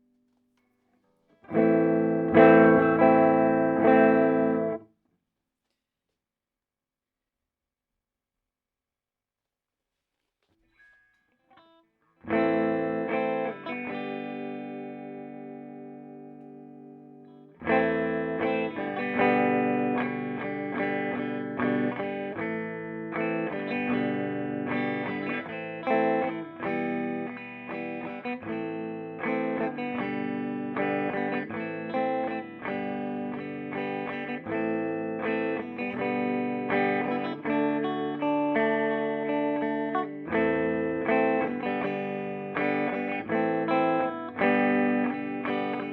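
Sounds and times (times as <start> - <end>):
clean electric guitar: 1.1 - 4.9, 10.6 - 45.9.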